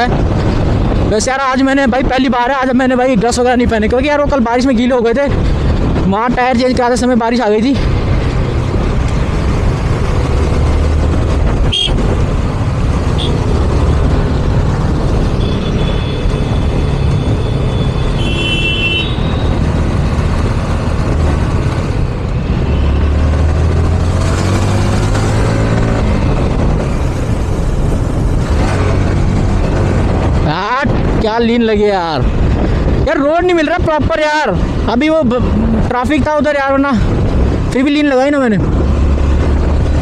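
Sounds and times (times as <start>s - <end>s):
wind and road noise: 0.0s - 40.0s
vehicle horn: 11.7s - 12.0s, 13.2s - 13.4s, 15.4s - 19.4s.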